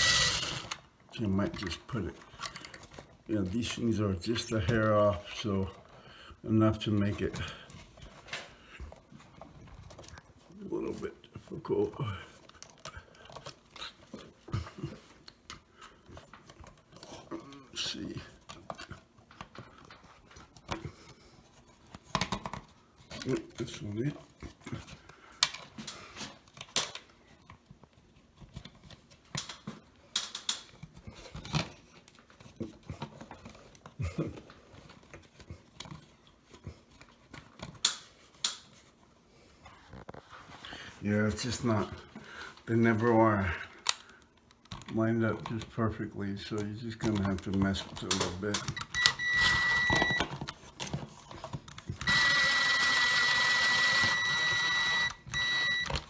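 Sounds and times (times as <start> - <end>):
cordless drill whine: 0.0 - 0.8, 48.8 - 50.3, 52.0 - 56.0.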